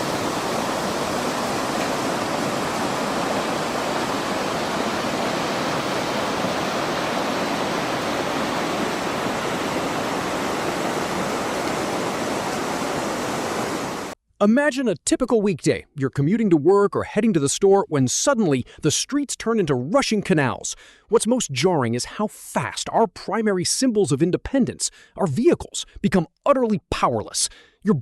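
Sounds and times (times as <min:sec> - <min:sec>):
rushing floodwater: 0:00.0 - 0:14.2.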